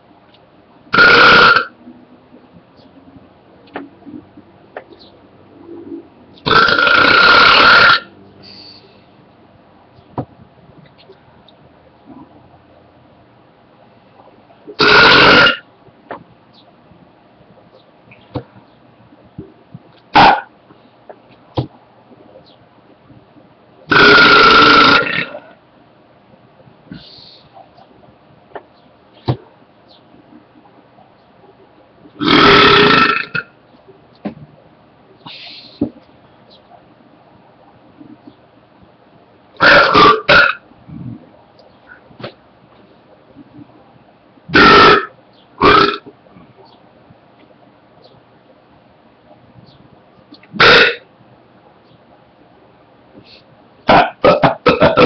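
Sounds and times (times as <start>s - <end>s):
person belching loudly: 0.9s - 1.7s, 6.4s - 8.1s, 14.8s - 15.6s, 20.2s - 20.5s, 23.9s - 25.5s, 32.2s - 33.4s, 39.6s - 41.2s, 44.5s - 46.1s, 50.6s - 51.0s, 53.9s - 55.0s
person burping: 0.9s - 1.7s, 6.5s - 8.1s, 14.8s - 15.6s, 20.2s - 20.5s, 23.9s - 25.5s, 32.2s - 33.4s, 39.6s - 41.2s, 44.5s - 46.1s, 50.6s - 51.0s, 53.9s - 55.0s.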